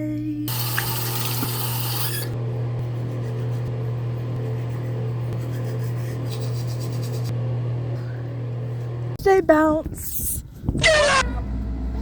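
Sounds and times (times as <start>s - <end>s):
low mechanical hum: 0.0s - 12.0s
light rubbing or scratching: 5.4s - 7.3s.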